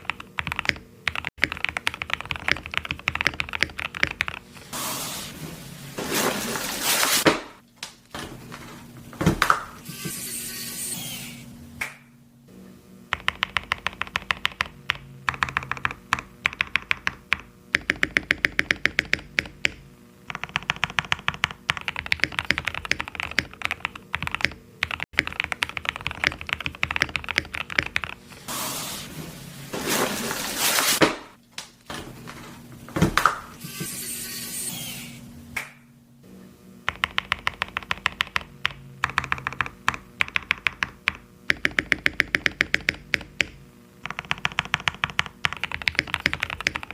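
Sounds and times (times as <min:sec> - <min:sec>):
typing on mechanical keyboard: 0:00.0 - 0:04.4, 0:13.1 - 0:28.2, 0:36.9 - 0:46.9.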